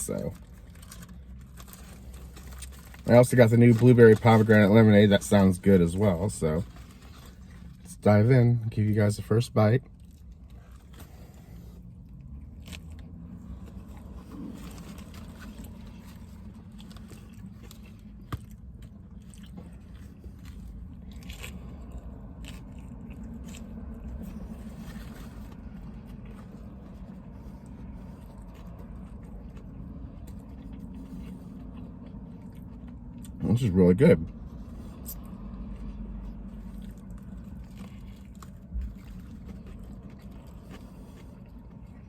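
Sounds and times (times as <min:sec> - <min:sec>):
steady low hum: 0:00.0 - 0:42.0
person biting and chewing food: 0:10.0 - 0:33.4, 0:34.3 - 0:42.0.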